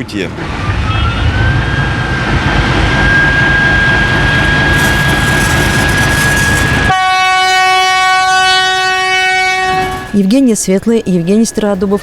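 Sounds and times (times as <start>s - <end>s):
diesel locomotive engine rumble: 0.0s - 12.0s
steady high whine: 0.2s - 7.0s.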